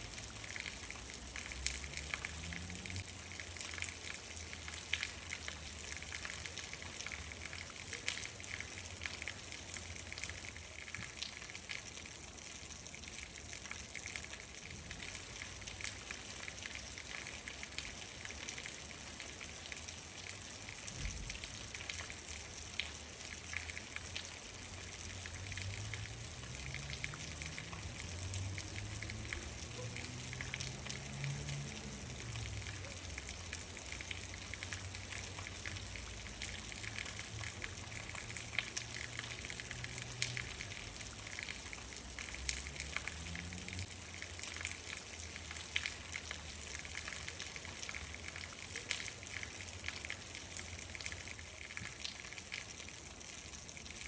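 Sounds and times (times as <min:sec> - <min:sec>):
raindrops ticking: 0:00.0 - 0:54.0
steady rain: 0:00.0 - 0:54.0.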